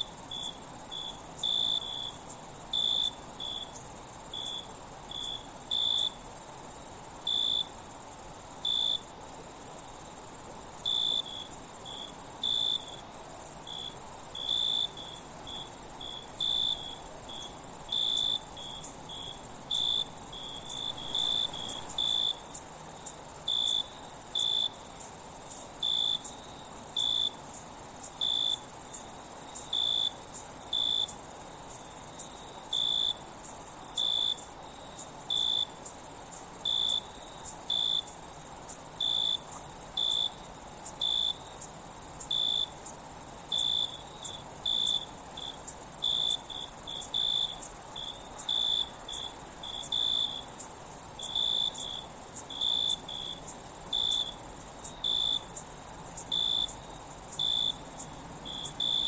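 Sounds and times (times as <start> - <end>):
cricket chirping: 0.0 - 59.0
high-pitched insect trill: 0.0 - 59.0.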